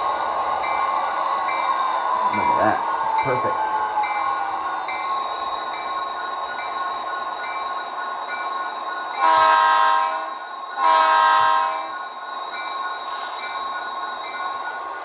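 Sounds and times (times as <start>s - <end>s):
model locomotive horn blasts: 9.2s - 12.0s.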